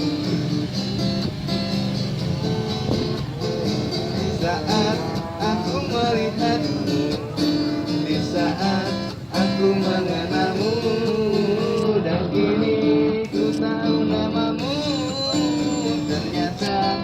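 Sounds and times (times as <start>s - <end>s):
acoustic guitar strumming: 0.0s - 17.0s
person singing: 4.2s - 17.0s.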